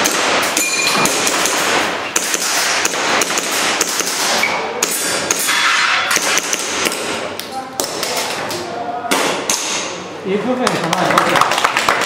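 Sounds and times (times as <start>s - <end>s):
airsoft pistol shots: 0.0s - 8.2s
metallic pings of steel targets: 0.4s - 1.4s, 4.4s - 6.5s.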